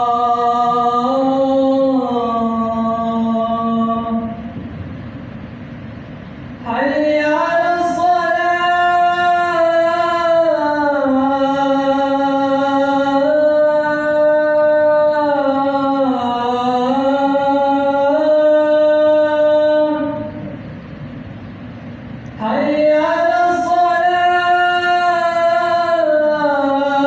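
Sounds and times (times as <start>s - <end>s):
man chanting call to prayer: 6.6s - 20.4s, 22.4s - 27.0s.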